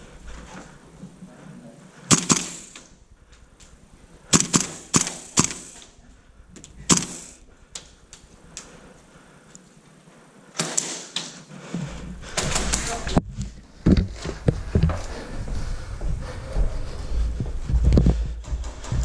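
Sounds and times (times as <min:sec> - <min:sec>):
airsoft gun shots: 0:02.1 - 0:02.9, 0:04.3 - 0:05.9, 0:06.9 - 0:07.4, 0:10.6 - 0:11.4.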